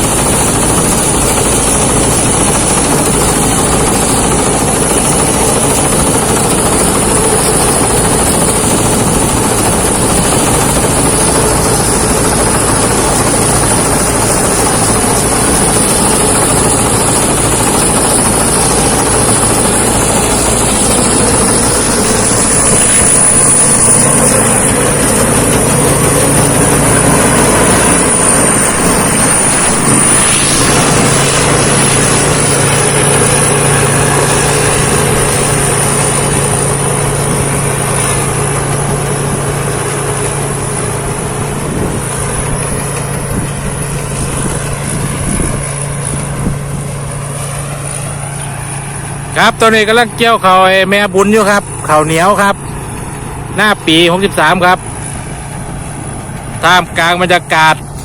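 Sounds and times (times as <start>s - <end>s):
combine harvester running: 0.0s - 58.0s.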